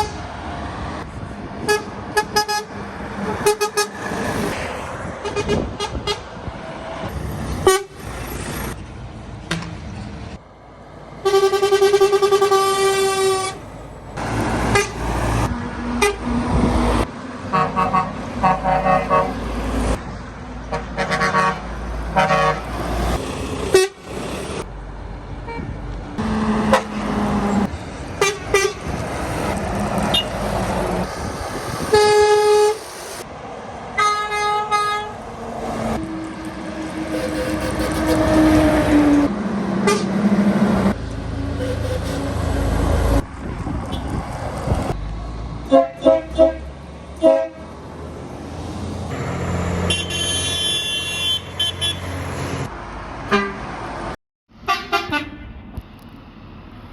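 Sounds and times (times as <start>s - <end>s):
truck horn blasts: 0.0s - 0.2s, 1.6s - 4.0s, 5.2s - 6.3s, 7.6s - 8.0s, 11.2s - 13.7s, 14.6s - 15.0s, 16.0s - 16.3s, 17.5s - 19.4s, 20.7s - 22.7s, 23.7s - 24.0s, 25.5s - 27.0s, 28.2s - 28.9s, 31.9s - 32.8s, 34.0s - 35.2s, 36.0s - 38.5s, 39.8s - 40.2s, 41.6s - 42.5s, 45.7s - 47.6s, 49.8s - 52.2s, 53.3s - 53.6s, 54.6s - 55.5s
traffic noise: 0.0s - 56.9s.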